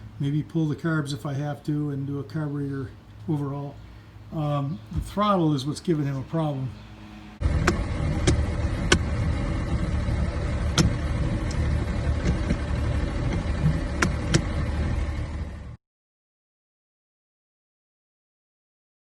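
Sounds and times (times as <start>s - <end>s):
engine rumbling: 0.0s - 15.8s
sharp clicks: 7.6s - 9.2s, 10.6s - 14.5s.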